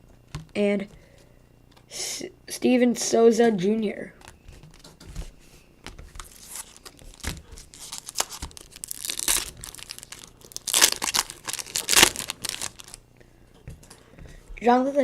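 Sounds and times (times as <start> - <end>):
foil wrapper tearing and crinkling: 6.2 - 13.0.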